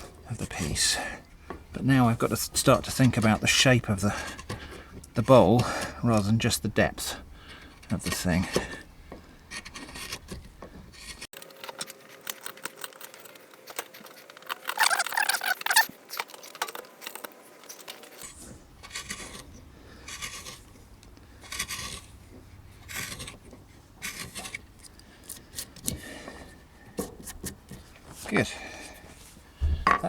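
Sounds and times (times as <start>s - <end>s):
carving gouge scraping wood: 0.0s - 6.4s, 7.0s - 29.0s.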